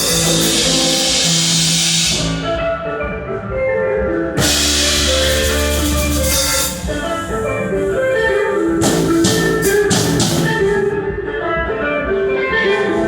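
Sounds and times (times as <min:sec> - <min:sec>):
cymbal crashes: 0:00.0 - 0:02.7, 0:04.4 - 0:08.1
held bass note: 0:00.0 - 0:02.7, 0:04.4 - 0:08.0
drum kit: 0:00.0 - 0:02.9, 0:04.3 - 0:11.0
plucked melody notes: 0:00.0 - 0:13.0.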